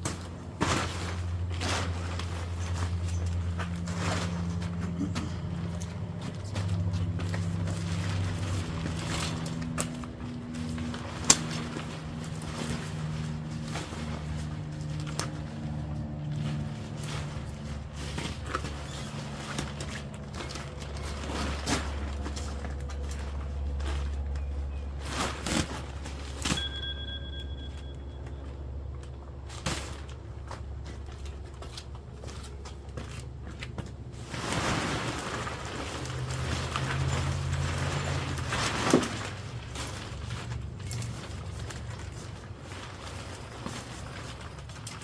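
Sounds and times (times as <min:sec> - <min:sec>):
tent poles knocking and clicking: 0:00.0 - 0:26.8
tent fabric rustling: 0:00.2 - 0:26.9, 0:29.4 - 0:45.0.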